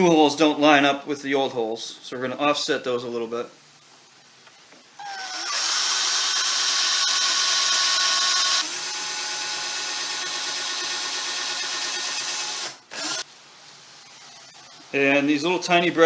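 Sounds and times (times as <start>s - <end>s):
electric drill boring into wood: 5.0s - 13.3s.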